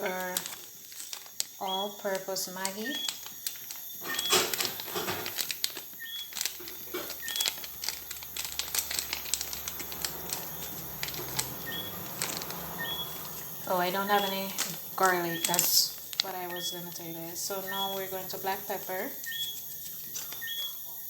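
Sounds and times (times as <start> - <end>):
seasoning shaken from container: 6.6 - 16.8.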